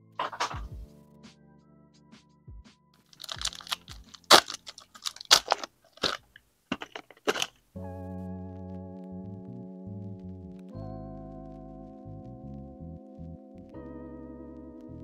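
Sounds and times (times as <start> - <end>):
faint background music: 0.0 - 5.6, 7.7 - 15.0
wrapper crinkling: 3.0 - 7.7.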